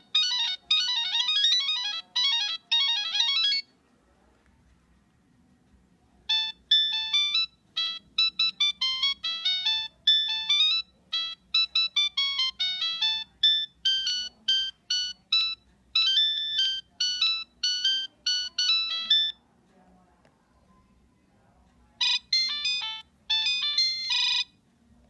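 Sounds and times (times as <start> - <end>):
phone ringtone beeping melody: 0.0 - 3.7, 6.3 - 19.4, 22.0 - 24.6.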